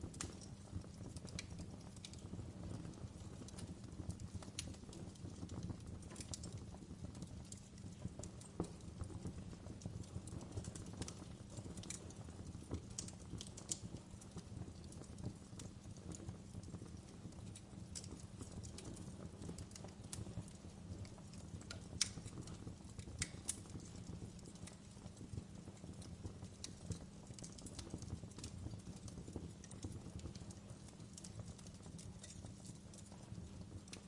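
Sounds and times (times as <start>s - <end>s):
wood fire crackling: 0.0s - 34.0s.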